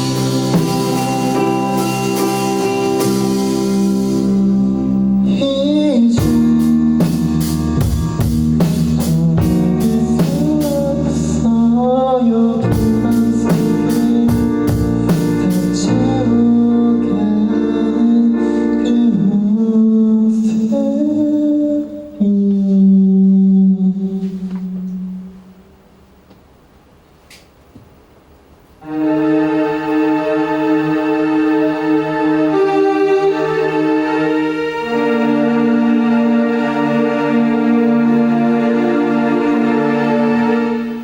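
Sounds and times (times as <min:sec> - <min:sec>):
drum kit beat: 0:00.0 - 0:04.7, 0:06.0 - 0:11.2, 0:12.7 - 0:15.9
guitar: 0:00.0 - 0:22.6
person singing: 0:05.2 - 0:07.2, 0:08.6 - 0:25.6.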